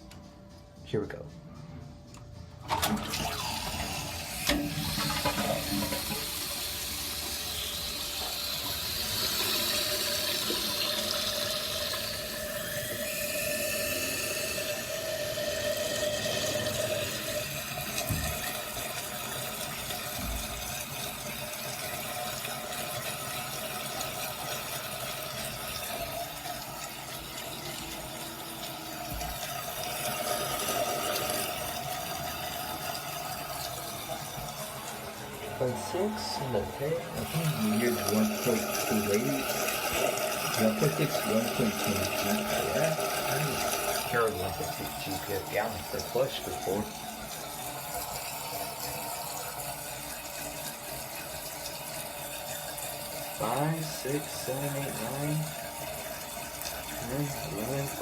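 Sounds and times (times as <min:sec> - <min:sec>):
toilet flushing and refilling: 0:02.6 - 0:58.0.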